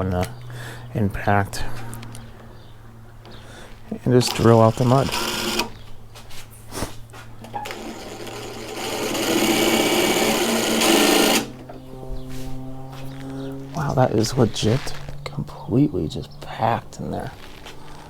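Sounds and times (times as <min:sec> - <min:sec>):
impact driver spinning: 0:01.8 - 0:11.8.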